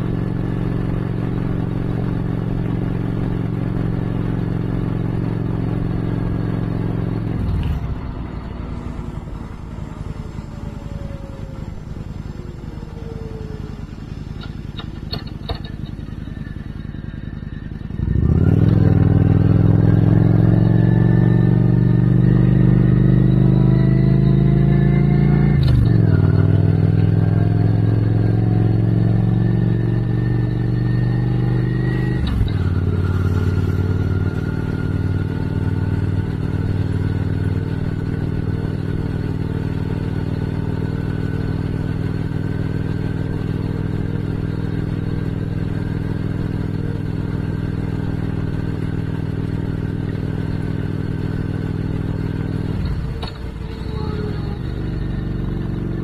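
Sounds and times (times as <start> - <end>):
motorcycle engine shifting gears: 0.0 - 56.0.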